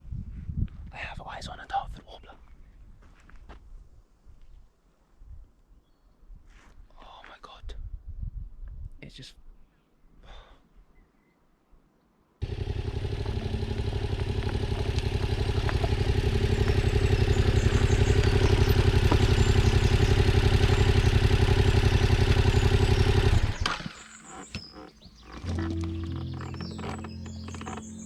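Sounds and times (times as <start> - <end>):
motorcycle engine running: 12.4 - 28.0.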